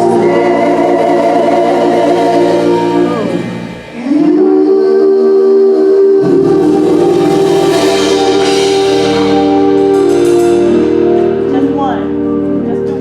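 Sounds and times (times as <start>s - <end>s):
bass part: 0.0s - 4.4s
gospel music sustained chord: 0.0s - 13.0s.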